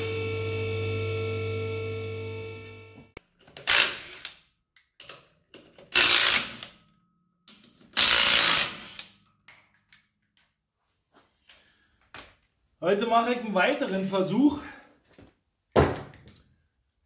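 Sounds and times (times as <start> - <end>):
workshop tool running: 0.0 - 4.4.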